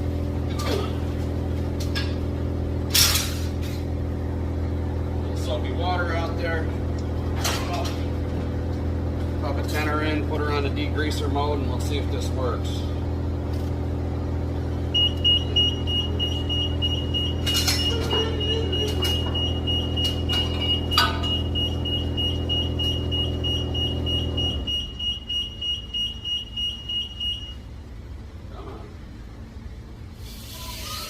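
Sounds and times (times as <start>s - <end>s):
high electronic beeping tone: 14.9s - 27.6s.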